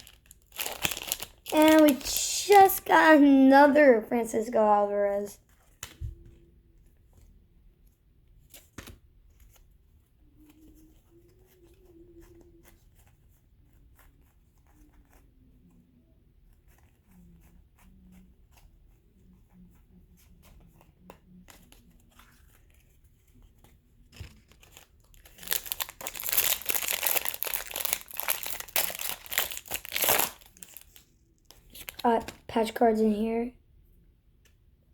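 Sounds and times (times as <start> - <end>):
cards being handled: 0.0 - 3.0, 8.4 - 15.3, 20.2 - 32.5
wrapper crinkling and tearing: 0.0 - 3.6, 23.6 - 32.4.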